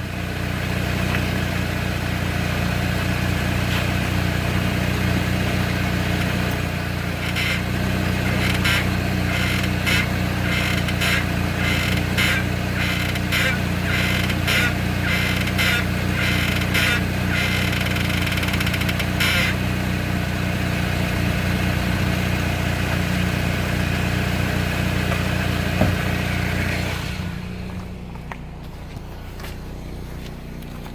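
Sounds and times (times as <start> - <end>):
car running hum: 0.0 - 30.9
brake pulsing noise: 0.8 - 30.9.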